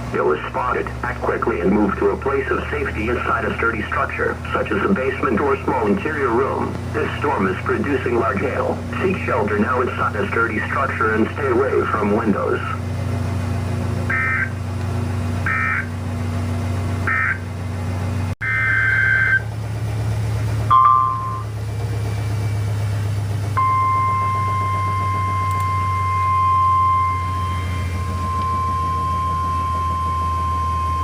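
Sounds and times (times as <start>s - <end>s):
low radio hum: 0.0s - 31.0s
warning alarm tone: 14.1s - 14.6s, 15.4s - 15.9s, 17.0s - 17.5s, 18.4s - 19.5s, 20.6s - 21.6s, 23.6s - 31.0s
data bursts: 23.6s - 31.0s.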